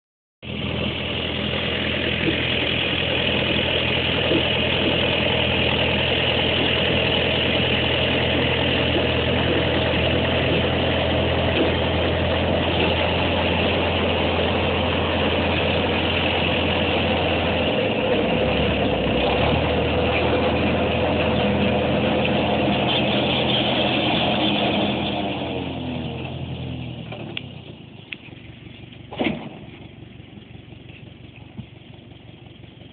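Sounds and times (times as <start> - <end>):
high whine: 0.4 - 26.7
tractor engine running: 0.4 - 32.9.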